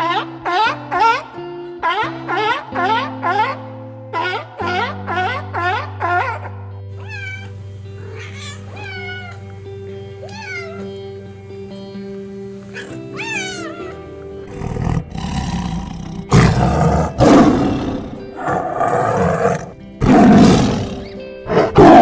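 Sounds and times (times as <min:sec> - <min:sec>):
background music with held tones: 0:00.0 - 0:22.0
short meow: 0:07.0 - 0:07.5, 0:08.1 - 0:09.5, 0:10.2 - 0:11.0, 0:12.8 - 0:14.0
big cat roaring: 0:12.8 - 0:22.0.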